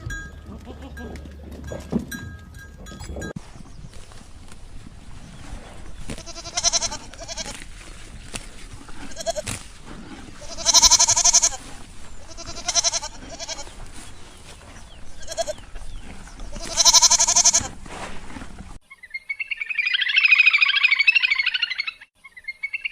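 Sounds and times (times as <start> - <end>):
farm animal bleating: 0.0 - 3.3, 6.0 - 7.7, 8.8 - 14.1, 15.0 - 17.8.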